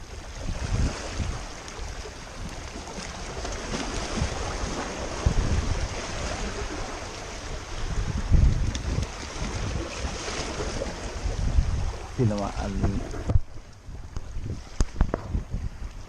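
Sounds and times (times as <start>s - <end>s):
sea water lapping: 0.0s - 16.0s
wind gusting over microphone: 0.0s - 16.0s.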